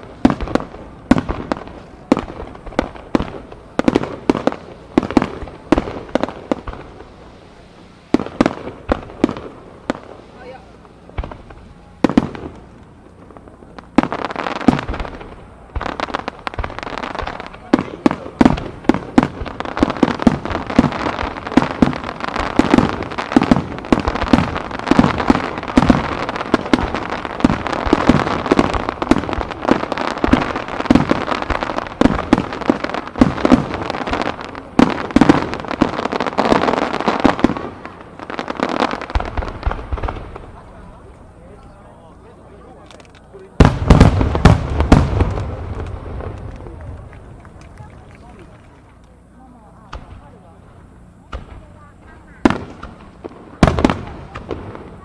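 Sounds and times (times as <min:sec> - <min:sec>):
fireworks bursting: 0:00.0 - 0:55.0
fireworks crackling: 0:00.0 - 0:55.0.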